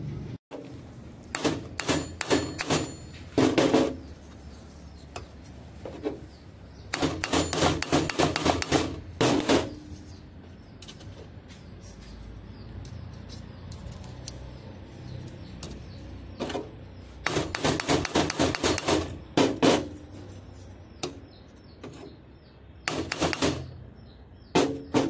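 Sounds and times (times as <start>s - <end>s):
hammer striking steel rivets: 1.3s - 4.1s, 6.8s - 10.0s, 17.2s - 20.1s, 22.9s - 23.9s.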